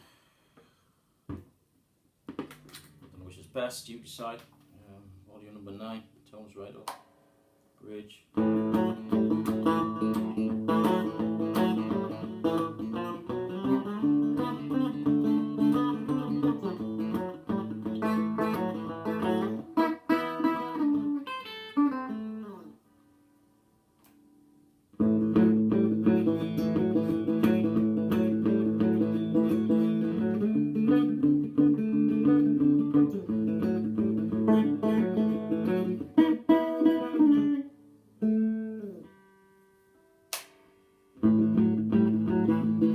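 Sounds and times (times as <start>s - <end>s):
electric guitar strumming chords: 8.3s - 22.7s, 25.0s - 39.5s, 41.2s - 42.9s.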